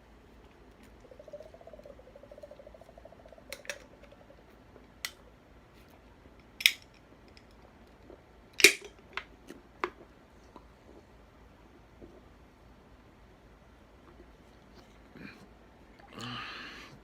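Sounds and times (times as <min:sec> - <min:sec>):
faint hummed tone: 0:00.0 - 0:06.3
sharp clicks and cracks: 0:03.3 - 0:04.2, 0:06.4 - 0:07.6, 0:08.6 - 0:10.0.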